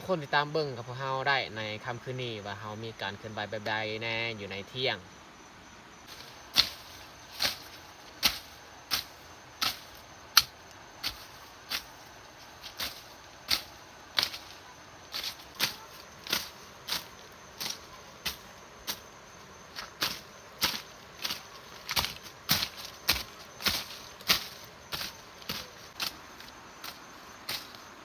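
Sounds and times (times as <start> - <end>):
footsteps on dirt trail: 6.1 - 28.0.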